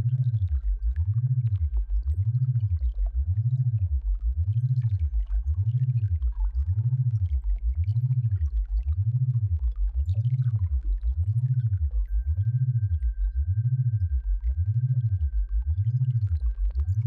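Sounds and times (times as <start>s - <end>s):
low tone sweeping in pitch: 0.0s - 17.0s
faint steady high tone: 12.1s - 15.4s.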